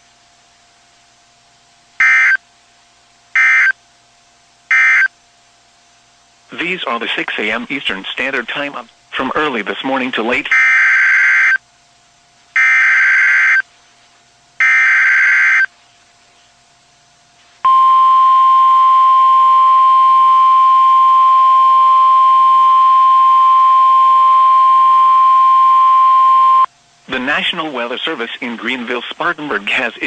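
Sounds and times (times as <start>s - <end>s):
steady warning alarm tone: 2.0s - 2.4s, 3.4s - 3.8s, 4.7s - 5.1s, 10.5s - 11.6s, 12.6s - 13.6s, 14.6s - 15.7s, 17.7s - 26.7s.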